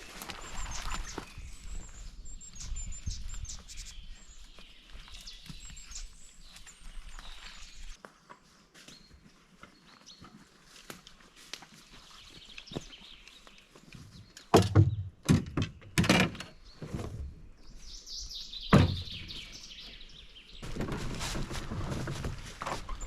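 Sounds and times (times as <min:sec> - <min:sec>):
small bird singing a trill: 0:00.4 - 0:08.0, 0:17.6 - 0:20.6.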